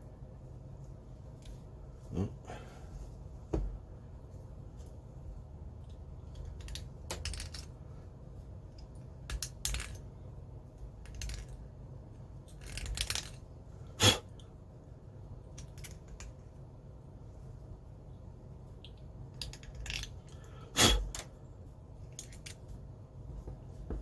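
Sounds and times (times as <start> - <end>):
plastic parts scraping and clicking: 5.8 - 7.8, 11.0 - 11.6, 12.5 - 13.4.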